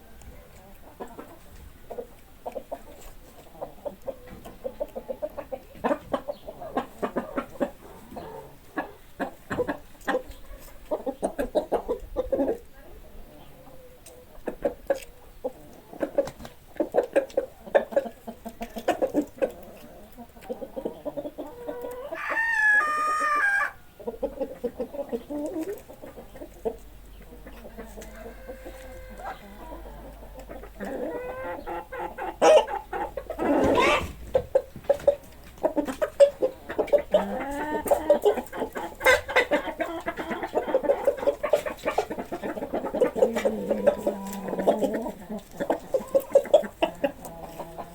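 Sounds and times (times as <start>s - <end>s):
chickens clucking: 0.0s - 47.9s
rooster crowing: 22.1s - 23.8s.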